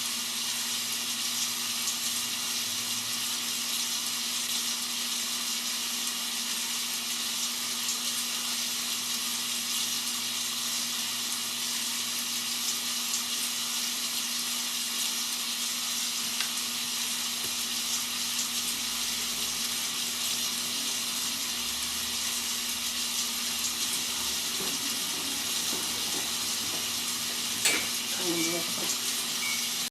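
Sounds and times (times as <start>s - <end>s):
rain falling: 16.3s - 29.9s.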